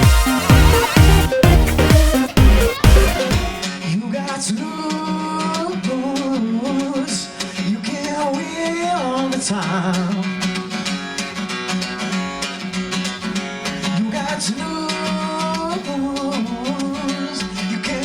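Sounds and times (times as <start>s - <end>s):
person singing: 0.0s - 7.1s
strummed acoustic guitar: 0.0s - 18.0s.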